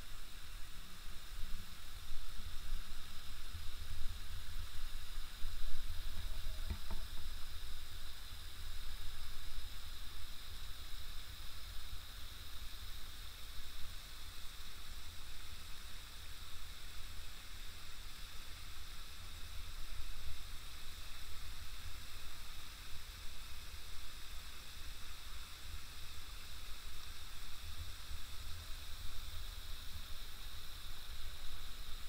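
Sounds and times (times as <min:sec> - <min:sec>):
low unsteady rumble: 0:00.0 - 0:10.4.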